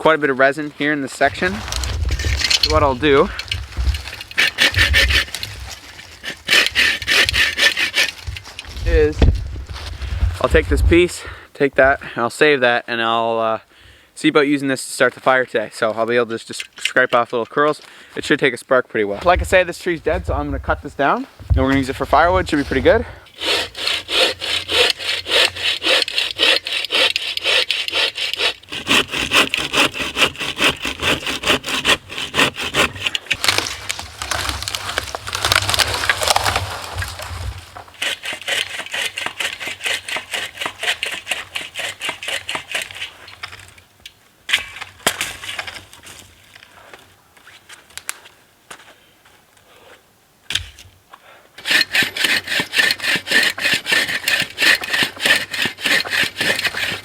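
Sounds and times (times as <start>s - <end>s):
hand saw cutting wood: 1.3s - 8.6s, 22.1s - 33.7s, 37.9s - 43.2s, 51.6s - 57.0s.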